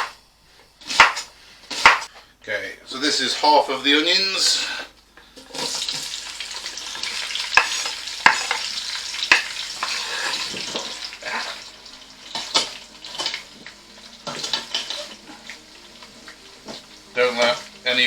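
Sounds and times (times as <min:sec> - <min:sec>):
onions sizzling in oil: 0:00.0 - 0:02.1, 0:03.2 - 0:18.0
utensil knocking against pot: 0:07.6 - 0:08.6.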